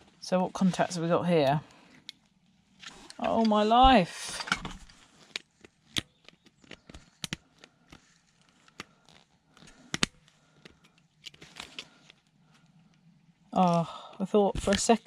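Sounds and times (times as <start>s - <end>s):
small plastic parts clicking: 4.4s - 12.2s.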